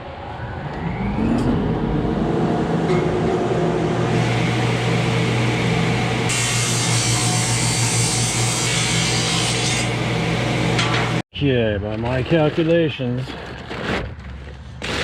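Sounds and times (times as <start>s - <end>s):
table saw motor hum: 0.4s - 11.2s
saw blade cutting wood: 6.3s - 10.0s.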